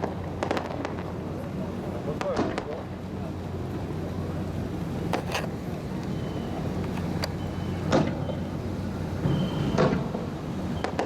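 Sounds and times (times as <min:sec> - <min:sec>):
fireworks bangs: 0:00.0 - 0:01.3, 0:02.1 - 0:02.9, 0:07.8 - 0:08.4, 0:09.2 - 0:11.0
steady low rumble: 0:00.0 - 0:09.3.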